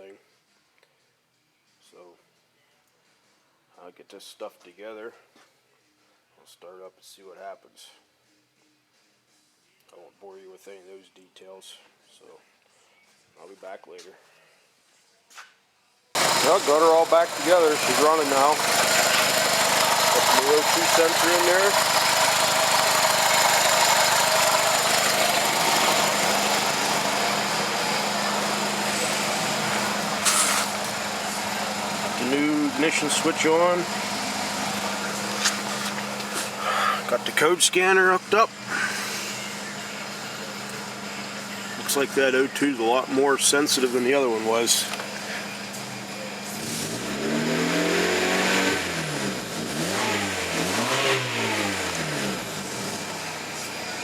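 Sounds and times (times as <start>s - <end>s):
car engine idling: 16.2s - 54.0s.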